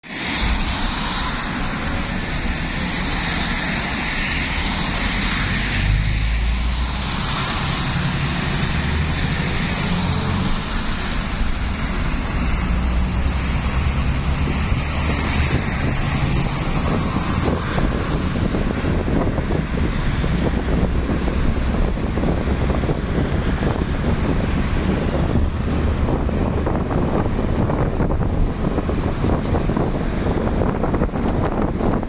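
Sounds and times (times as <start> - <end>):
highway traffic: 0.0 - 32.0.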